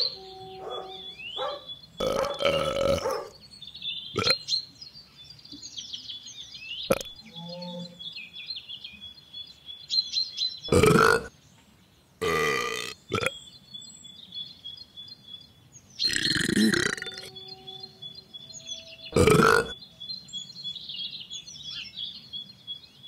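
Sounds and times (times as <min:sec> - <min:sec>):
birds chirping: 0:00.0 - 0:23.0
dog burping: 0:02.0 - 0:03.3, 0:04.1 - 0:04.4, 0:06.9 - 0:07.2, 0:10.7 - 0:11.3, 0:12.2 - 0:13.4, 0:16.1 - 0:17.3, 0:19.1 - 0:19.8.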